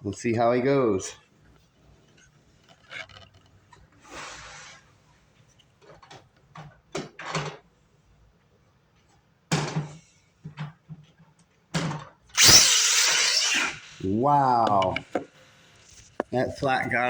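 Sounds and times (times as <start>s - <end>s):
electric motor whining: 12.4s - 13.9s.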